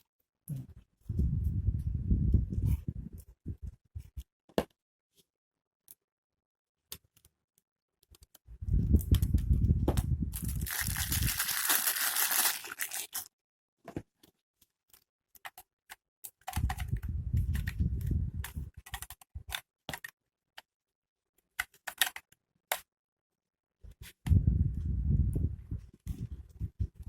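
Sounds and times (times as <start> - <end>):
packaging crinkling and tearing: 10.4 - 13.3.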